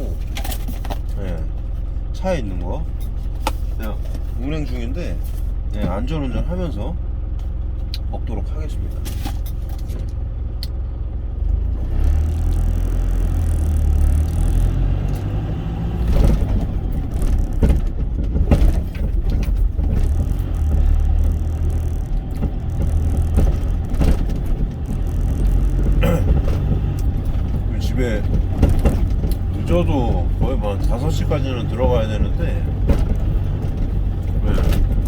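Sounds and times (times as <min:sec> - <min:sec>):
truck engine and road rumble: 0:00.0 - 0:35.0
brief knocks and rustles: 0:16.0 - 0:27.6.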